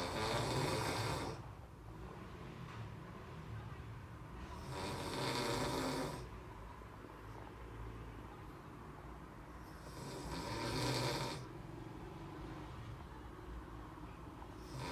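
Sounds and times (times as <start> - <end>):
man snoring: 0.0 - 1.4, 4.6 - 6.3, 9.7 - 11.5, 14.6 - 14.9.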